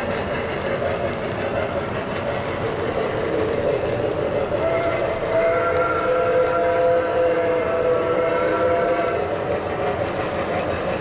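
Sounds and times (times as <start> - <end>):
model locomotive running noise: 0.0 - 11.0
multi-tone steam whistle: 4.5 - 9.6.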